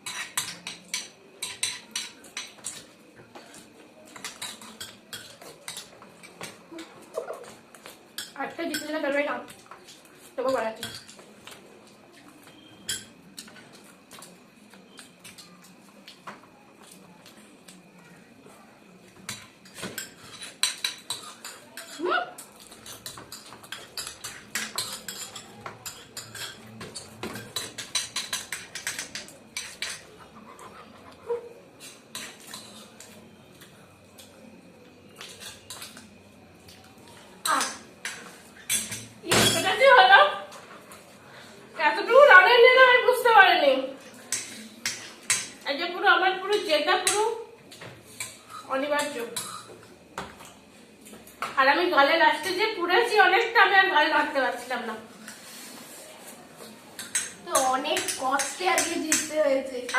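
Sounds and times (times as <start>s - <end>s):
spoons clinking on plates: 0.0s - 11.6s, 12.2s - 15.7s, 19.2s - 30.2s, 31.8s - 41.1s, 44.0s - 45.6s, 46.4s - 50.6s, 56.6s - 59.9s.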